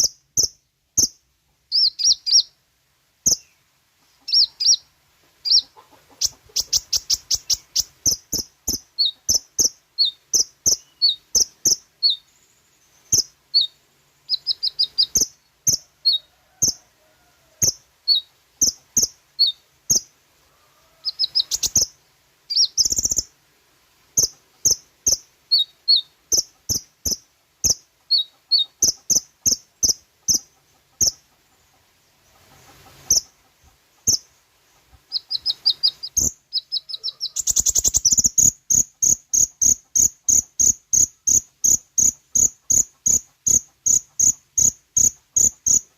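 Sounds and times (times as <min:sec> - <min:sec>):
sunbird chirping and trilling: 0:00.0 - 0:02.6, 0:03.2 - 0:16.8, 0:17.6 - 0:23.3, 0:24.1 - 0:31.2, 0:32.1 - 0:45.9.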